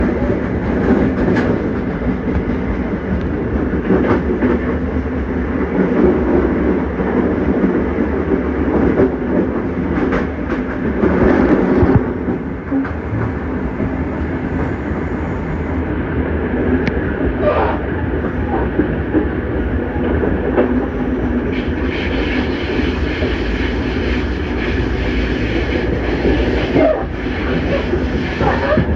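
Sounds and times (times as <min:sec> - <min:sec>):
train rumble and hum: 0:00.0 - 0:28.9
wheels clicking on track: 0:18.2 - 0:28.9.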